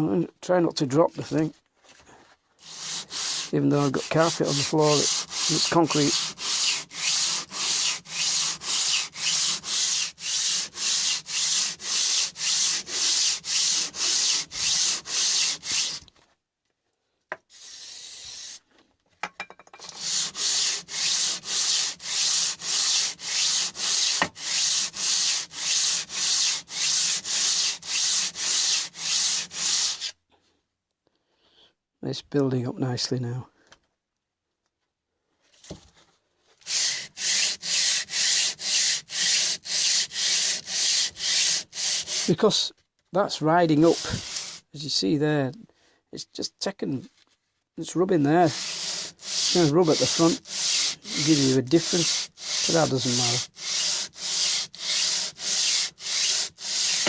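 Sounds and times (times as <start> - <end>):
hand plane scraping on abrasive: 2.6 - 16.1, 19.8 - 30.2, 36.6 - 42.7, 43.7 - 44.7, 48.1 - 57.0.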